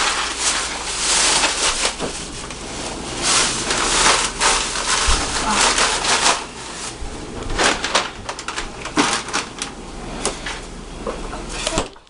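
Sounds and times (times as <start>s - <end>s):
oil popping and crackling: 0.0s - 6.6s.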